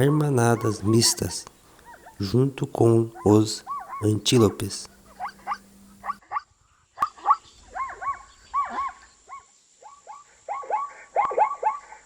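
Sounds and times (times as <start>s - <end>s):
zebra barking: 0.0s - 6.5s.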